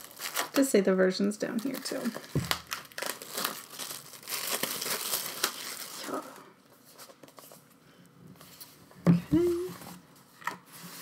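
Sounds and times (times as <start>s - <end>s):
paper crinkling and rustling: 0.0s - 0.7s, 1.4s - 7.7s.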